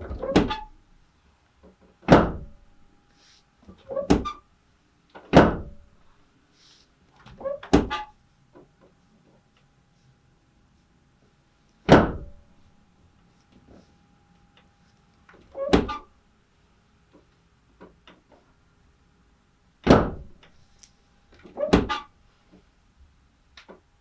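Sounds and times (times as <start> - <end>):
heavy thuds: 2.1 - 2.8, 5.4 - 6.0, 11.9 - 12.4, 19.9 - 20.5.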